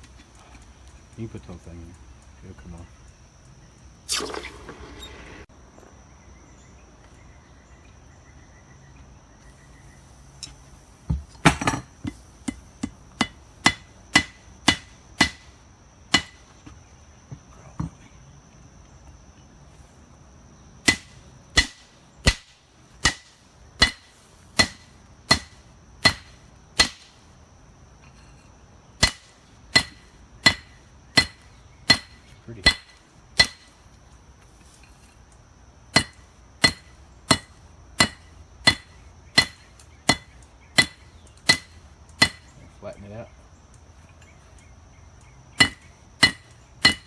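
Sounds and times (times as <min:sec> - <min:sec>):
faint high whine: 0:03.6 - 0:13.5
hammer striking metal on anvil: 0:12.5 - 0:15.4, 0:24.6 - 0:27.0, 0:29.8 - 0:33.7, 0:36.0 - 0:42.4, 0:45.6 - 0:47.0.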